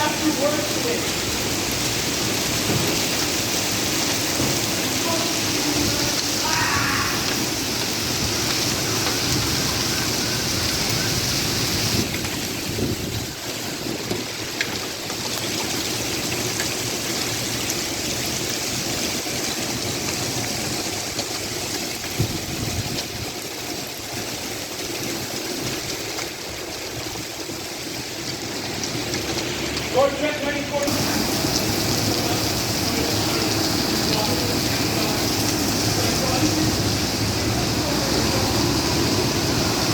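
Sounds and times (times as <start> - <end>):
heavy rain hissing: 0.0 - 39.9
rushing floodwater: 0.0 - 39.9.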